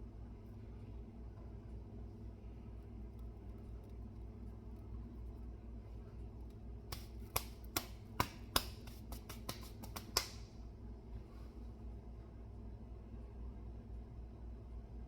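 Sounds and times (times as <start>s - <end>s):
low steady hum: 0.0s - 15.0s
seasoning shaker clicking and tapping: 6.5s - 10.4s.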